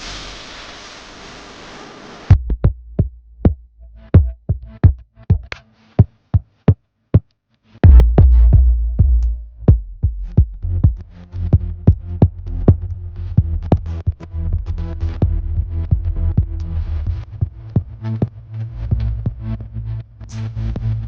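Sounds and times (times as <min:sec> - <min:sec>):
hiss: 0:00.0 - 0:02.3
electronic music with heavy bass: 0:07.8 - 0:21.0.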